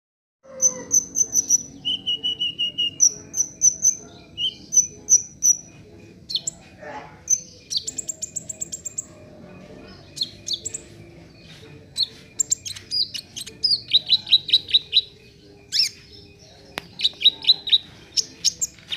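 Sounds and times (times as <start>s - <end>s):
sunbird singing: 0.5s - 18.9s.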